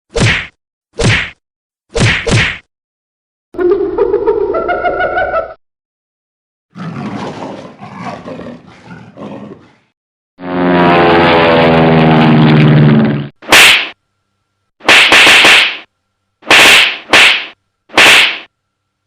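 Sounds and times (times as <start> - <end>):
sharp slap-like crack: 0.1 - 2.7, 13.5 - 14.0, 14.8 - 18.5
loud low-pitched roar: 6.7 - 9.9.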